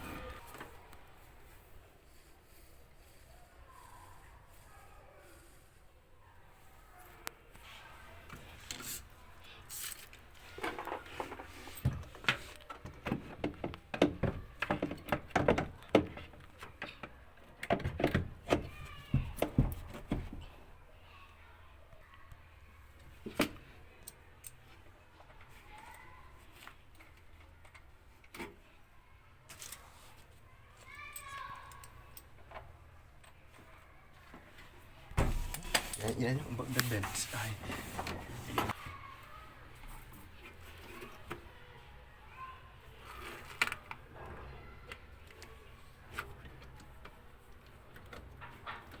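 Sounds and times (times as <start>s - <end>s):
tools and metal parts clattering: 9.7s - 20.4s, 35.2s - 38.8s.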